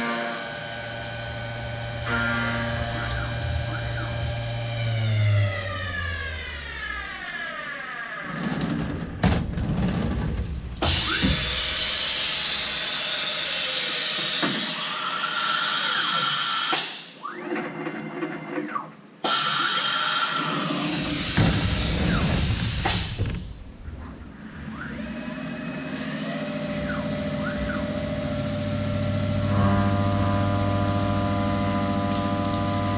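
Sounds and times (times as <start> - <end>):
machine whining glide: 0.0 - 9.1, 19.6 - 32.9
milling machine cutting: 0.0 - 9.1, 19.2 - 23.4.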